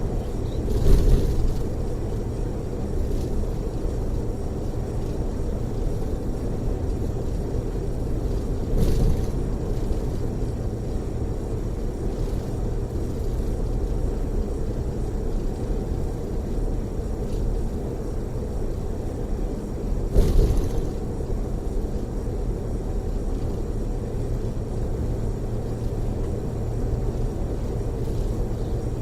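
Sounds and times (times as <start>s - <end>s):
coach engine and road noise: 0.0s - 29.0s.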